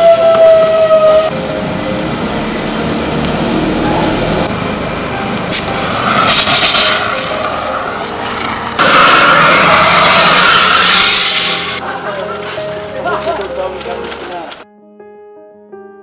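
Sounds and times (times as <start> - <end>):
siren: 0.0 - 1.4
air brakes hissing: 8.8 - 11.8.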